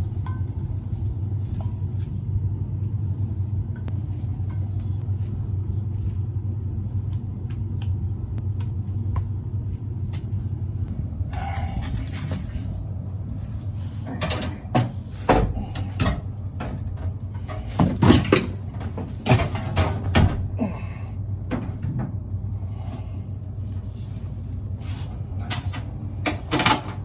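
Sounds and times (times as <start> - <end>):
steady low hum: 0.0 - 27.0
tools knocking and clattering: 14.1 - 20.4, 25.5 - 27.0.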